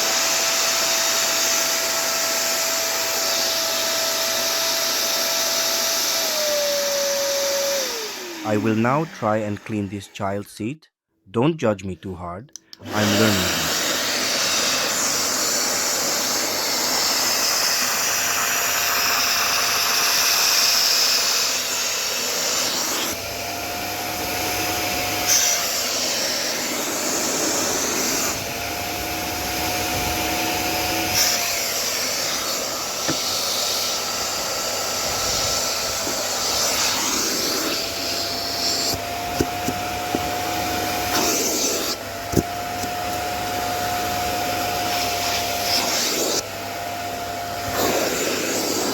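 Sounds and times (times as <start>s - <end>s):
vacuum cleaner motor whine: 0.0s - 9.9s, 12.8s - 48.9s.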